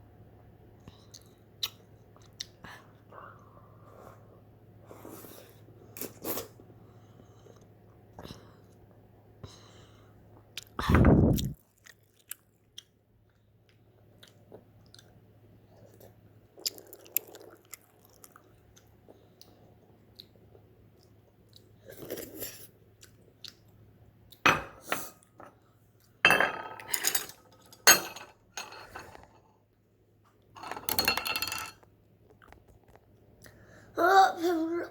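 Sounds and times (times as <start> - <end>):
faint steady hum: 0.0 - 34.9
person chewing noodles: 10.4 - 24.4.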